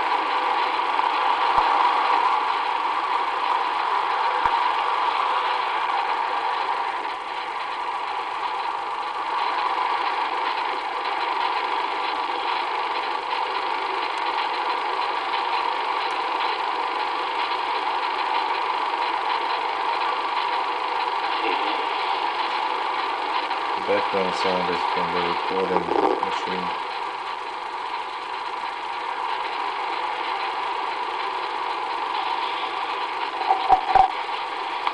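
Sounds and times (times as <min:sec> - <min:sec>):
recording machine hum and hiss: 0:00.0 - 0:34.9.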